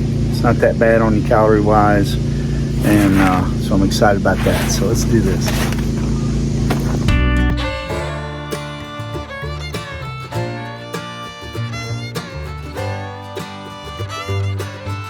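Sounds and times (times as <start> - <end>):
bluegrass country tune: 2.7 - 15.0
plucked acoustic guitar: 2.7 - 15.0
fiddle: 7.4 - 15.0.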